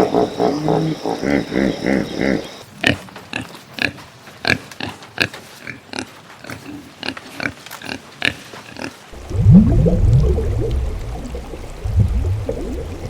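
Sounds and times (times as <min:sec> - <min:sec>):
low sound with rising pitch sweeps: 0:09.2 - 0:13.0.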